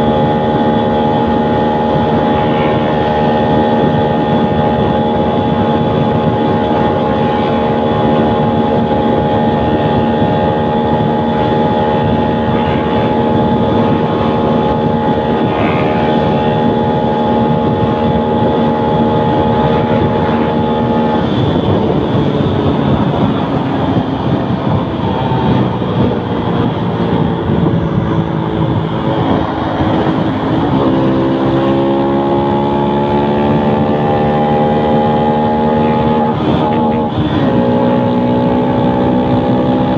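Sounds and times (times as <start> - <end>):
small motorcycle engine revving: 0.0 - 39.9
wind noise: 0.0 - 39.9.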